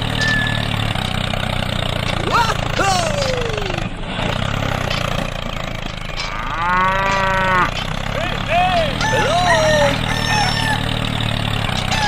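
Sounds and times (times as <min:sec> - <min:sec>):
small engine humming: 0:00.0 - 0:12.0
cow mooing: 0:06.2 - 0:07.8.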